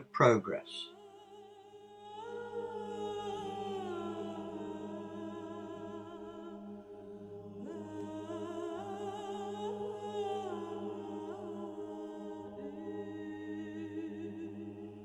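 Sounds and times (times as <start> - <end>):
wordless vocal melody: 2.1 - 15.0.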